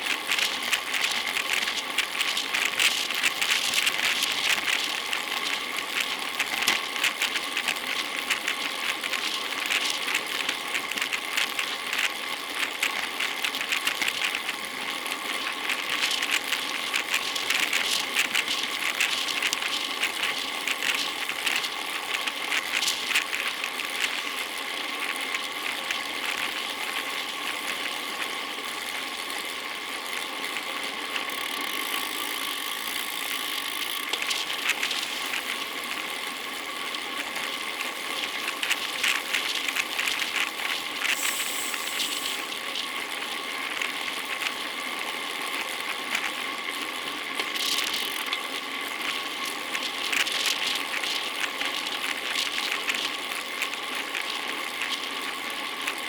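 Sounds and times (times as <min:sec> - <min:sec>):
bicycle mechanical whir: 0:00.0 - 0:56.0
freehub clicking: 0:31.2 - 0:36.1.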